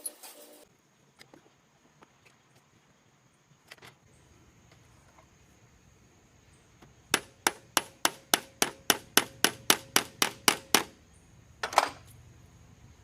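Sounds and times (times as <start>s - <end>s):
hammer striking metal: 7.2s - 10.9s.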